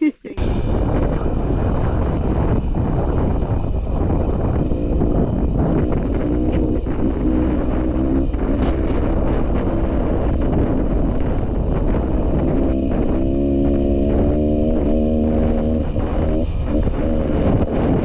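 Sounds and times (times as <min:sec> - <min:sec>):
wind noise on microphone: 0:00.4 - 0:18.0
dirt bike engine revving: 0:04.1 - 0:18.0.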